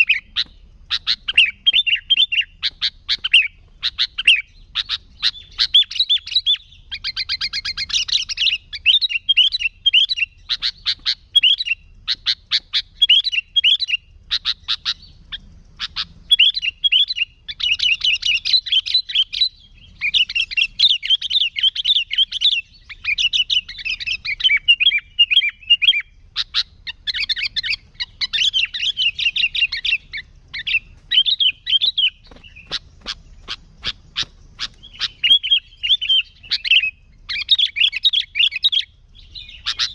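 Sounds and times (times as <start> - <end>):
bulbul singing: 0.0 - 39.9.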